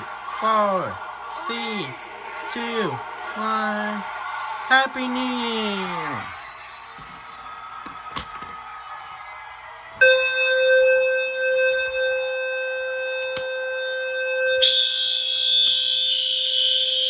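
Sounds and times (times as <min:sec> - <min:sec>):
high-pitched alarm: 0:10.0 - 0:17.0
loud steady fire alarm tone: 0:10.0 - 0:17.0.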